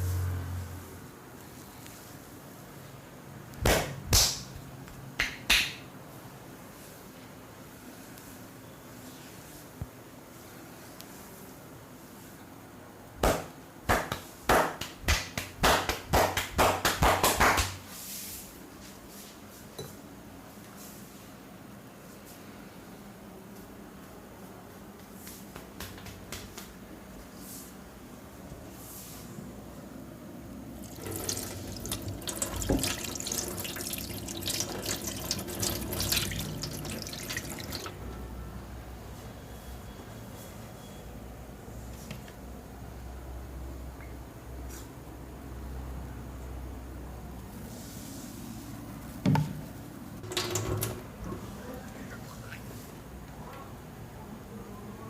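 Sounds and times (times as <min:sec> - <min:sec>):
hands slapping during massage: 0:03.6 - 0:04.6, 0:05.2 - 0:05.9, 0:13.2 - 0:17.9, 0:25.2 - 0:26.9.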